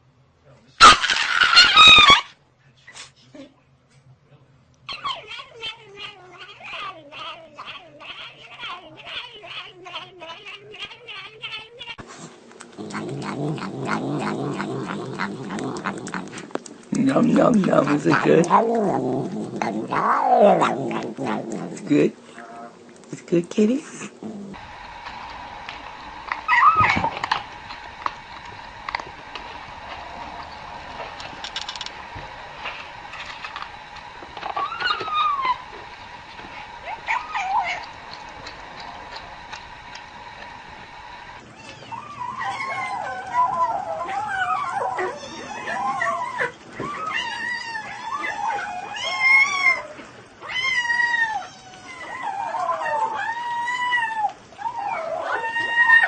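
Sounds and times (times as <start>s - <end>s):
cat vocalizing: 4.9s - 22.8s, 26.2s - 49.8s.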